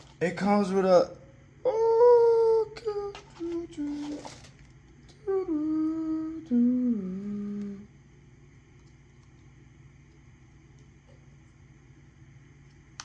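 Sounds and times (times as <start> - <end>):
man humming: 1.6 - 4.2, 5.2 - 7.9
handling rustle: 3.2 - 4.6.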